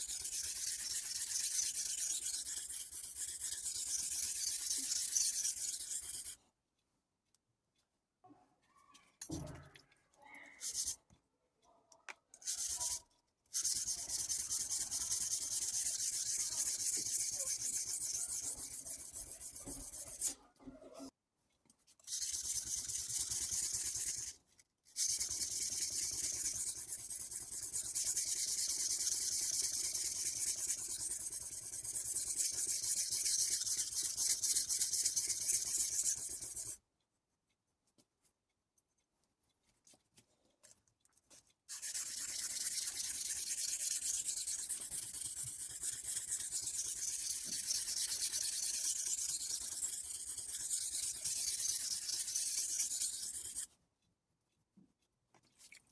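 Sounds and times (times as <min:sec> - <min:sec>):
knife scraping on whetstone: 0:00.1 - 0:06.4, 0:10.6 - 0:11.0, 0:13.6 - 0:21.1, 0:41.7 - 0:53.7.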